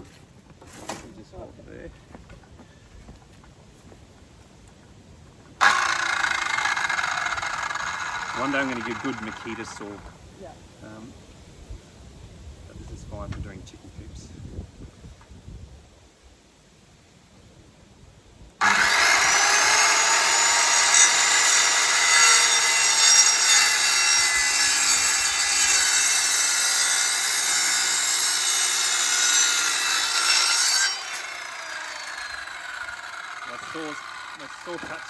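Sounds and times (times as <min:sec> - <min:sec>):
power saw cutting timber: 0:05.6 - 0:10.2, 0:18.6 - 0:35.0.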